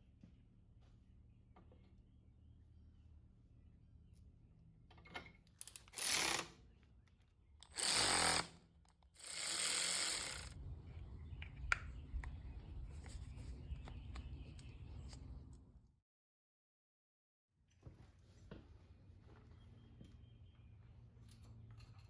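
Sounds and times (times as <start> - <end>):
handheld power tool bursts: 5.8 - 6.5, 7.6 - 8.6, 9.2 - 10.6.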